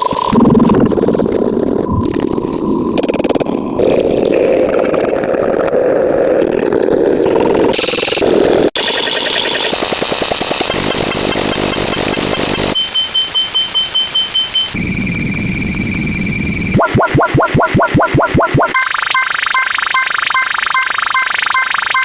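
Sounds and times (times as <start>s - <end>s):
mechanical buzzing and rattling: 7.8s - 12.8s
high-pitched electronic beeping: 7.8s - 22.0s.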